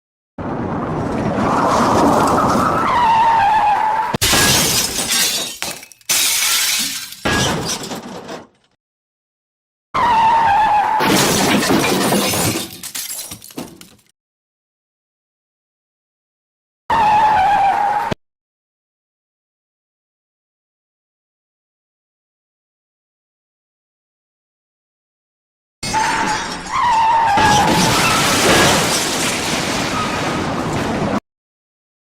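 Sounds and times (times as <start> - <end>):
car crash impacts: 4.2 - 8.6, 25.8 - 31.2
glass shattering: 4.2 - 8.7, 11.0 - 14.1, 25.8 - 30.4.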